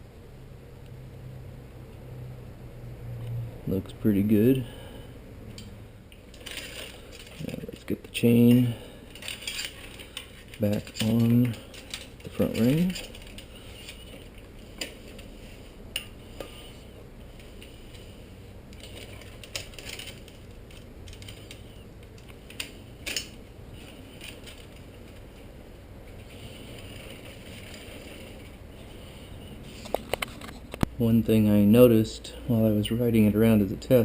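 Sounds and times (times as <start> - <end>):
handling sounds: 5.5 - 30.9.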